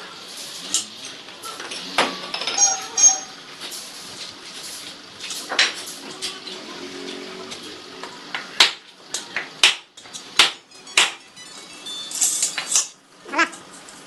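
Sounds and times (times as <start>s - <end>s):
metal tools clanking: 0.3s - 6.4s, 10.7s - 14.0s
metallic ringing and jingling: 2.3s - 3.4s, 10.7s - 13.0s.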